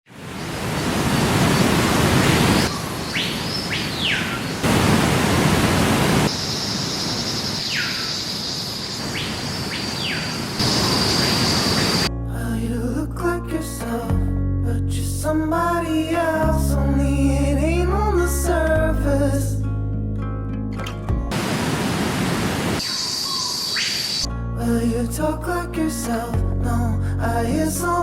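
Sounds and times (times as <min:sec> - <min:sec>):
waterfall rushing: 0:00.1 - 0:07.8, 0:08.9 - 0:12.1, 0:21.3 - 0:24.2
bird whistling: 0:02.6 - 0:04.6, 0:06.3 - 0:12.1, 0:22.8 - 0:24.3
high insect-like tone: 0:06.3 - 0:12.1, 0:22.8 - 0:24.3.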